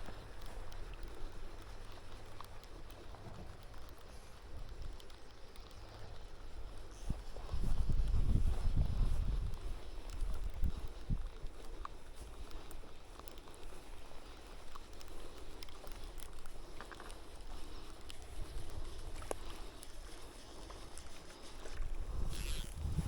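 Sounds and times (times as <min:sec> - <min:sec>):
small clicks: 0:00.0 - 0:08.2, 0:11.8 - 0:23.0
wind rumble on microphone: 0:00.0 - 0:13.0, 0:17.6 - 0:20.1, 0:20.7 - 0:23.0.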